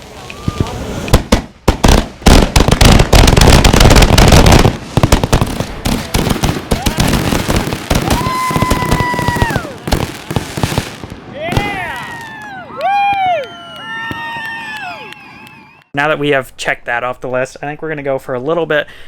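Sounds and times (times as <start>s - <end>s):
firework bangs: 0.0s - 14.9s
firework crackle: 0.0s - 15.4s.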